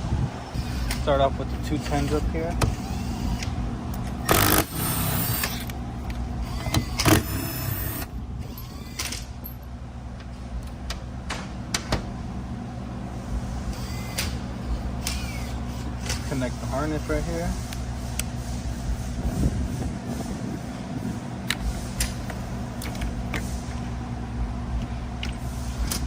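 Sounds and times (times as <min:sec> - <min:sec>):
low shop hum: 0:00.0 - 0:26.0
power ratchet whirring: 0:00.5 - 0:05.8, 0:06.4 - 0:09.6, 0:13.7 - 0:16.5.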